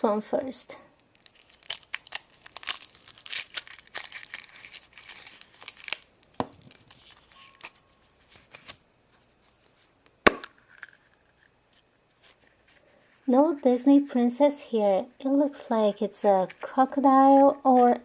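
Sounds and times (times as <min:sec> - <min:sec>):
foil wrapper crinkling: 0:01.0 - 0:08.8.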